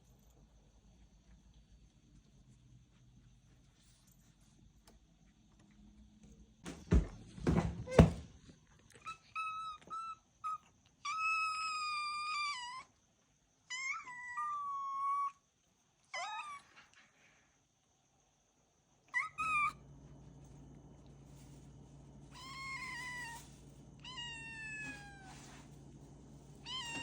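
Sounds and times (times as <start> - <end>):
kittens meowing: 19.2 - 19.8, 22.3 - 25.4, 26.6 - 27.0.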